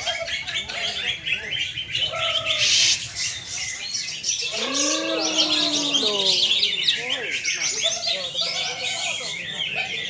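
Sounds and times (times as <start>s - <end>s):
songbirds chirping and trilling: 0.0s - 10.0s
low drawn-out call: 4.4s - 7.3s.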